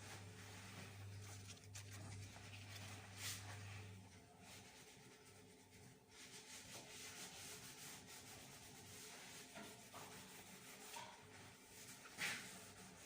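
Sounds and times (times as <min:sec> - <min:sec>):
faint sanding: 0:00.4 - 0:13.0.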